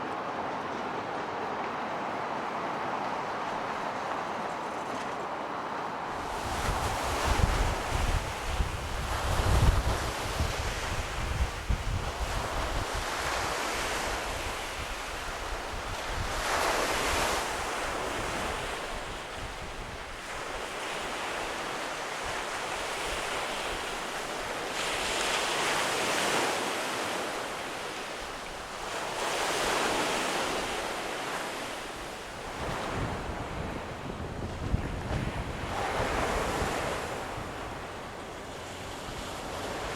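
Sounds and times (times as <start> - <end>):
wind buffeting microphone: 0.0 - 20.6, 31.9 - 39.9.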